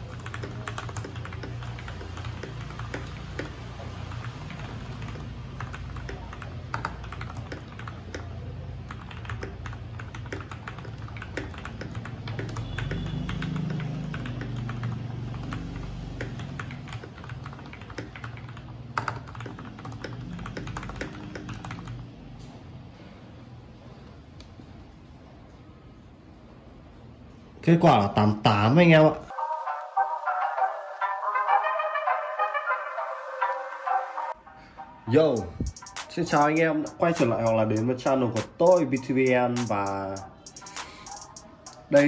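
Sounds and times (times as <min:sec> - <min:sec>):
mechanical keyboard typing: 0:00.0 - 0:22.1, 0:35.7 - 0:42.0.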